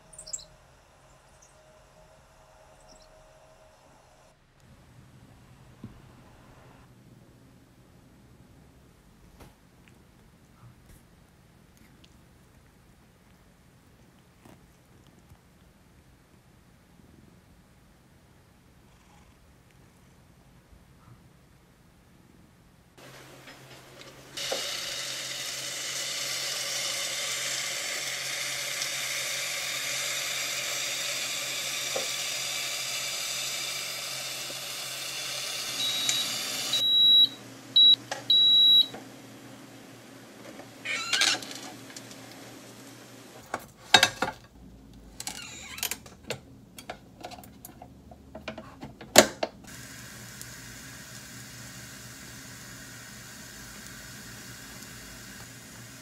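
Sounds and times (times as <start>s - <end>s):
steady hissing rush: 23.0s - 36.8s, 49.7s - 56.0s.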